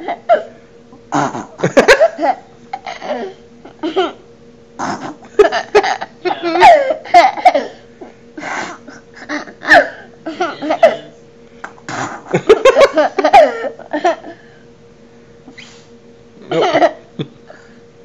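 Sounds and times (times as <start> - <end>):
baby giggling: 5.0 - 7.8.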